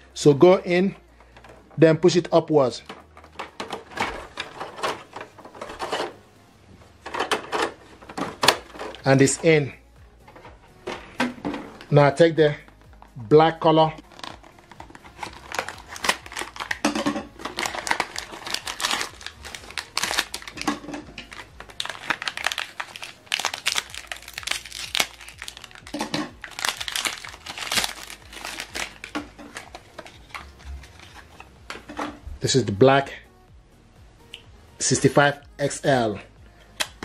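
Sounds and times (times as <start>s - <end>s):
packaging crinkling: 14.0s - 31.5s.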